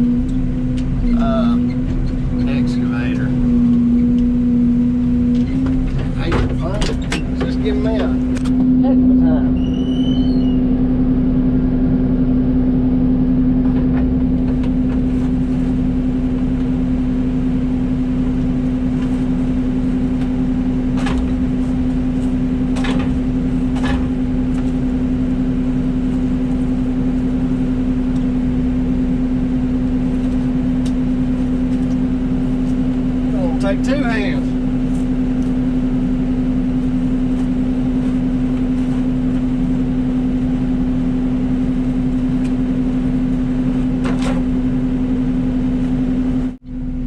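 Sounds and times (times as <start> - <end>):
diesel engine running: 0.0 - 47.0.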